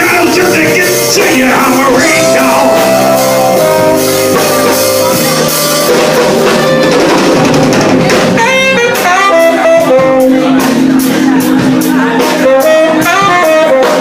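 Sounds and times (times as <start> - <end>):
run of rising notes: 0.0 - 9.7
drum kit: 0.0 - 14.0
guitar: 0.0 - 14.0
live band playing: 0.0 - 14.0.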